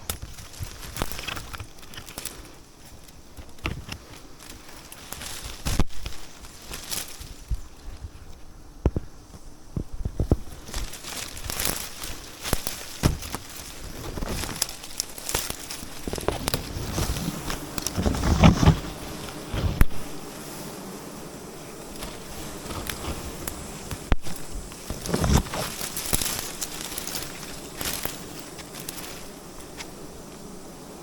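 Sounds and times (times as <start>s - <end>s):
bees buzzing: 0.0s - 31.0s
rustling leaves and branches: 0.0s - 31.0s
heavy thumps: 12.9s - 14.7s, 15.8s - 20.3s.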